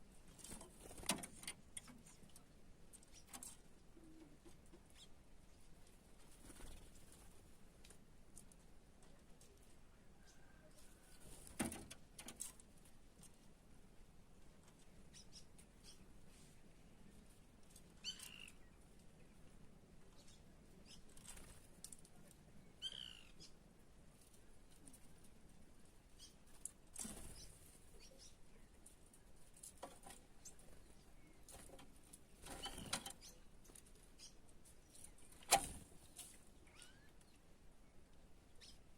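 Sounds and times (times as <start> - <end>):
small birds chirping: 1.7 - 7.2, 14.6 - 38.9
faint bird chirps: 2.9 - 5.2, 10.0 - 11.4, 15.0 - 16.1, 18.0 - 19.4, 20.0 - 21.6, 22.6 - 23.6, 26.1 - 26.6, 27.2 - 28.8, 32.4 - 35.4, 36.0 - 38.9.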